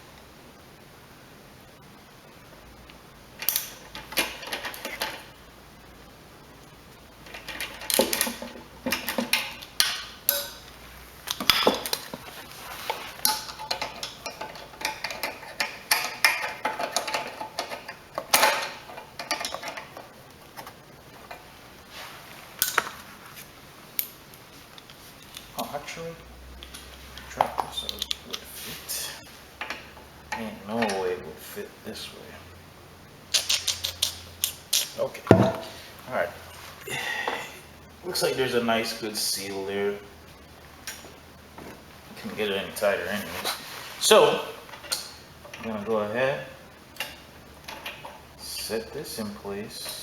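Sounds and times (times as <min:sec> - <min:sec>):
metal tools clinking and rattling: 0:07.2 - 0:10.7, 0:12.8 - 0:20.1, 0:33.3 - 0:35.6.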